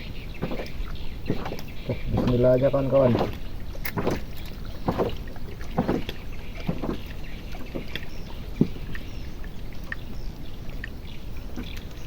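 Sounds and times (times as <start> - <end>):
boat engine rumble: 0.0 - 12.0.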